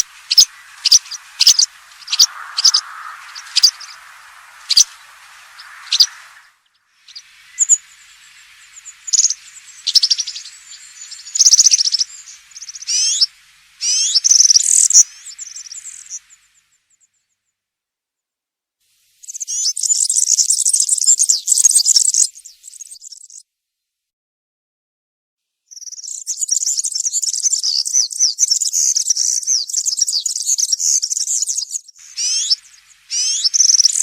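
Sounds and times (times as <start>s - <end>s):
bird chirping: 0.0s - 16.5s, 25.7s - 34.0s
bird song with rapid trills: 0.0s - 16.5s, 25.7s - 34.0s.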